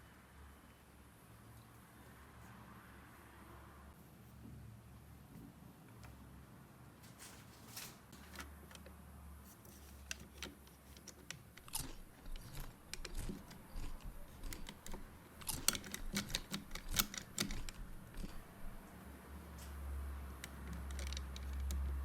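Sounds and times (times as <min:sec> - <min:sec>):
plastic toy pieces clicking: 0:10.0 - 0:18.8, 0:20.4 - 0:22.0.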